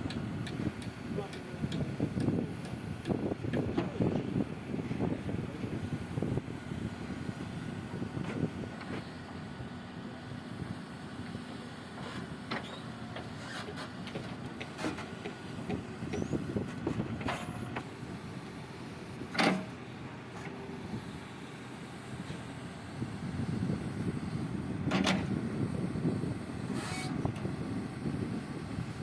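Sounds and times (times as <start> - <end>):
diesel digger engine running: 0.0 - 29.0
digger bucket scraping: 12.0 - 17.9.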